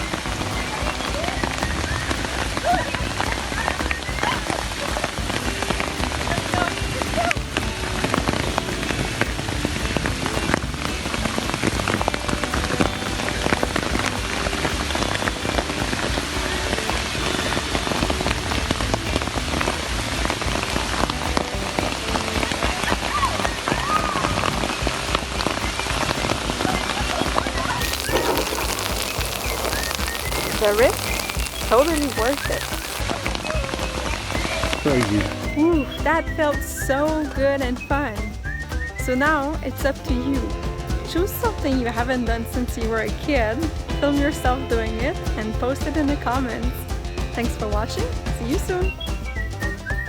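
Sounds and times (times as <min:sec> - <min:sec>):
rain falling steadily: 0:00.0 - 0:35.4.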